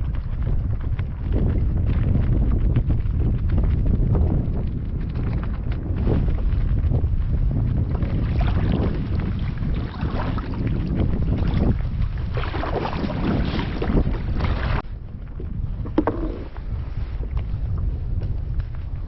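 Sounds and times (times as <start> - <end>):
wind buffeting microphone: 0.0 - 19.0
water splashing and lapping: 7.9 - 17.4.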